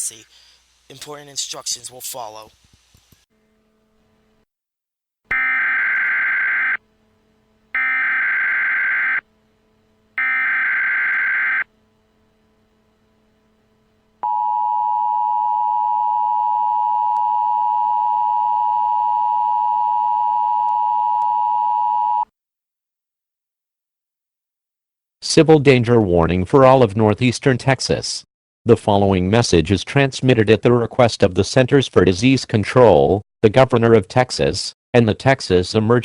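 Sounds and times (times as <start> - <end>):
harsh two-tone attention signal: 5.3 - 6.8, 7.8 - 9.2, 10.2 - 11.6.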